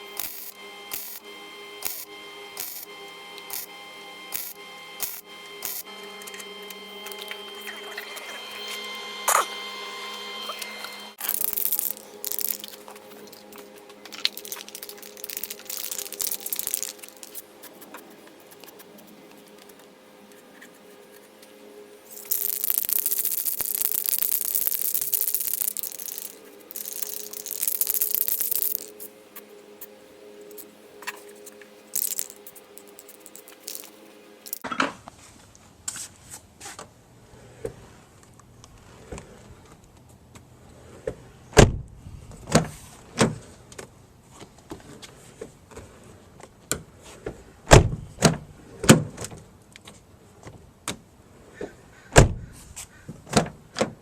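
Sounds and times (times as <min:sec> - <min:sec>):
welding crackling hiss: 0:00.0 - 0:01.2, 0:01.8 - 0:03.7, 0:04.3 - 0:06.4, 0:11.2 - 0:21.3, 0:22.0 - 0:34.6
electrical hum: 0:00.0 - 0:34.6.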